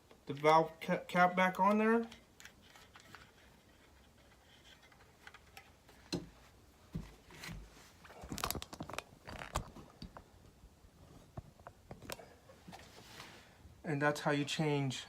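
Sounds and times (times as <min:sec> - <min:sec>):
handling clicks and knocks: 0:08.1 - 0:10.3.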